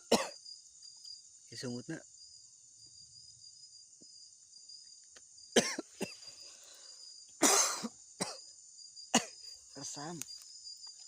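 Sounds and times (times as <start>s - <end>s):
insects buzzing: 0.0s - 11.0s
person coughing: 0.1s - 0.4s, 5.6s - 6.2s, 7.4s - 8.4s, 9.2s - 9.4s.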